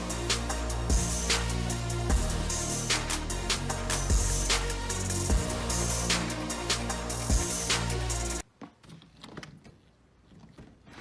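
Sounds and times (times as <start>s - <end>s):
music with drum beat: 0.0s - 8.4s.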